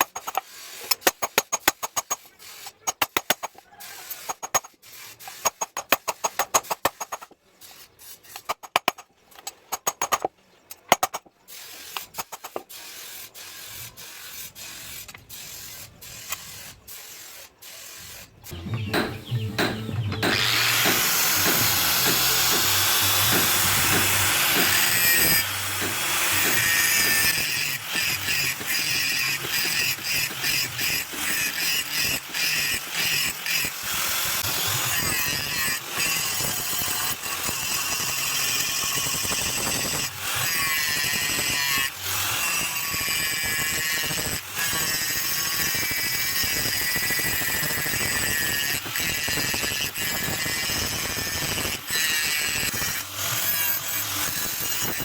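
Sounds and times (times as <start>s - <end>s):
power tool whining on steel: 18.0s - 55.0s
sharp knocks: 18.6s - 26.7s.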